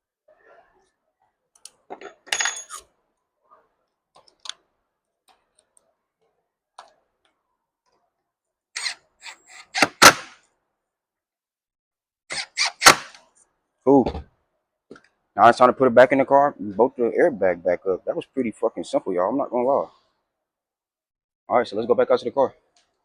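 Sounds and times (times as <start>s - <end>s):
small screws and tools clattering: 1.6s - 2.9s.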